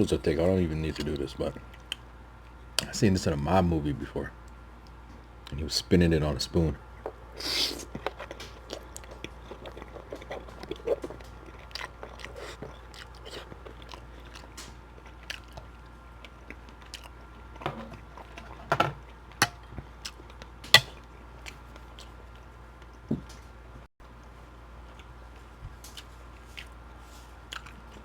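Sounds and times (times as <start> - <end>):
close-miked chewing: 0.4 - 2.9, 7.0 - 23.0, 24.2 - 28.0.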